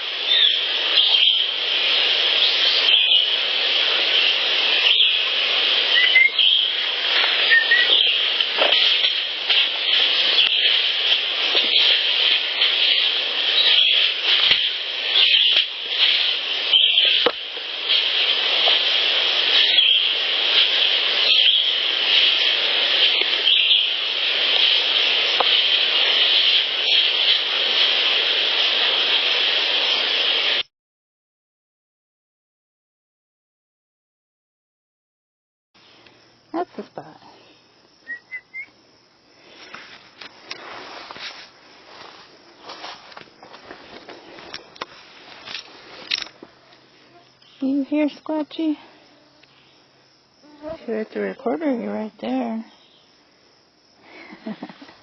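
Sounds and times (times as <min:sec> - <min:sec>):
steady outdoor hiss: 0:00.0 - 0:30.7, 0:35.8 - 0:55.0
wild birds chirping and whistling: 0:00.2 - 0:27.6, 0:37.3 - 0:38.8, 0:46.9 - 0:48.2, 0:49.4 - 0:50.0, 0:52.6 - 0:53.2.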